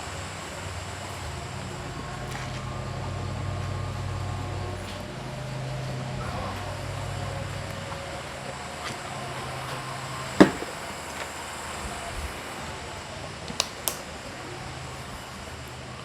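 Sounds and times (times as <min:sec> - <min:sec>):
mill humming: 0:09.7 - 0:11.2.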